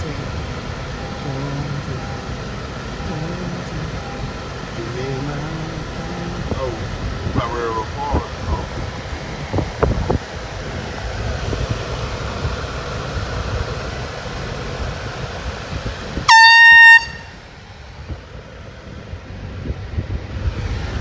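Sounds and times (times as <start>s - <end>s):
wind noise: 0.0s - 21.0s
air horn blast: 16.2s - 17.7s.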